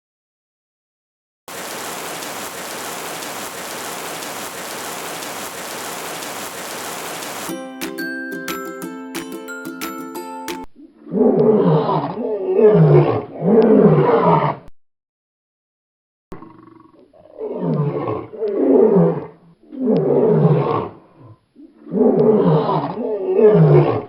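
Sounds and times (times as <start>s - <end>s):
large animal roaring: 11.0s - 14.6s, 16.4s - 24.0s.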